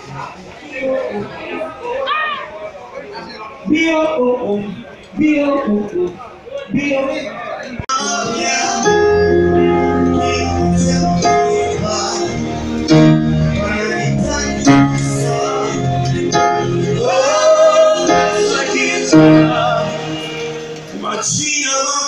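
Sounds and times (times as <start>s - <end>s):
live band playing: 7.9s - 21.6s
person singing: 7.9s - 22.0s.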